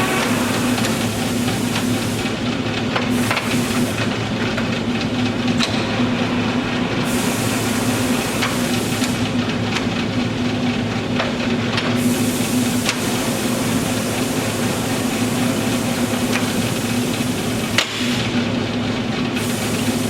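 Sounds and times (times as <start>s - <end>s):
lathe humming and whirring: 0.0s - 20.0s.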